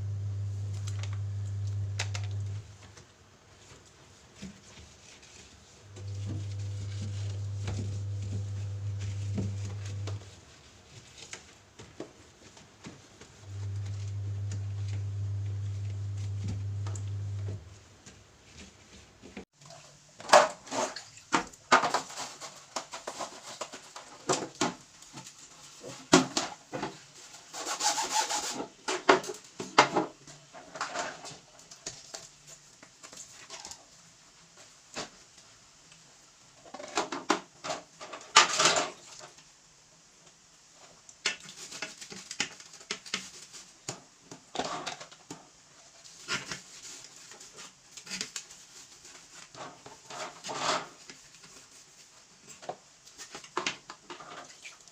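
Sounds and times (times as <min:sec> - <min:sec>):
scrubbing and rubbing: 0:04.2 - 0:11.2.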